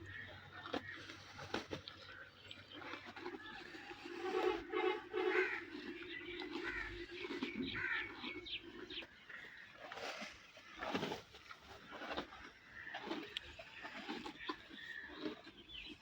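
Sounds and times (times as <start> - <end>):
harsh caw-like bird calls: 4.2 - 10.8, 11.8 - 15.9.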